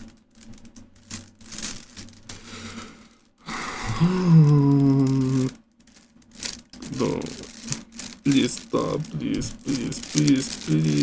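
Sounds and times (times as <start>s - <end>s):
puzzle cube clicking and rattling: 0.0s - 2.4s, 4.5s - 11.0s
person groaning hum: 2.5s - 5.6s, 6.8s - 7.5s, 8.3s - 11.0s.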